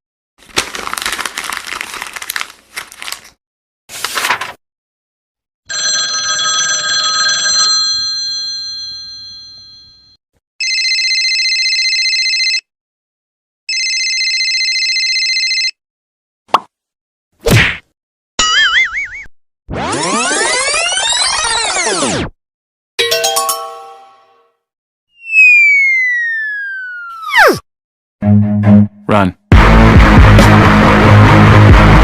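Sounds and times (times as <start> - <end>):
telephone bell trilling: 5.7 - 12.7, 13.7 - 15.8
ringing bell tone: 23.0 - 24.4.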